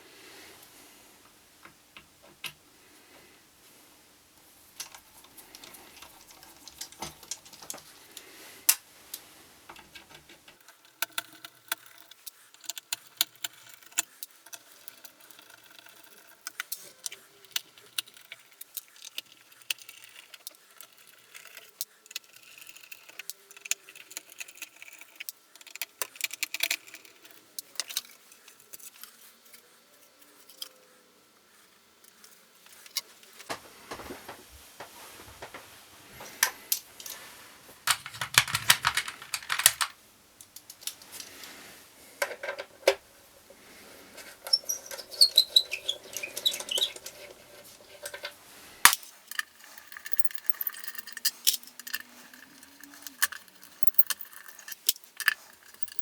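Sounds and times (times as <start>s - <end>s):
short squeaks: 44.4s - 47.6s.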